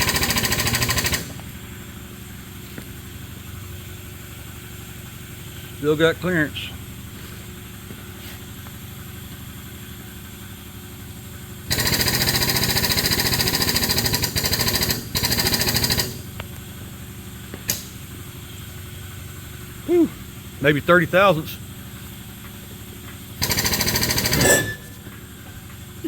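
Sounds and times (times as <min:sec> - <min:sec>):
hydraulic pump chattering: 0:00.0 - 0:01.6, 0:11.7 - 0:16.4, 0:23.2 - 0:26.0
low engine-like hum: 0:01.2 - 0:11.7, 0:16.2 - 0:23.4, 0:24.4 - 0:26.0.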